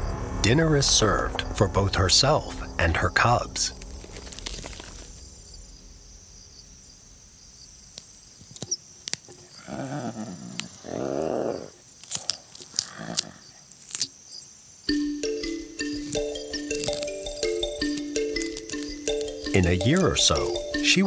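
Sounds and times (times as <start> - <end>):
chewing and tearing: 3.7 - 5.2, 8.4 - 14.2, 15.9 - 20.6
cheetah growls: 9.4 - 13.6.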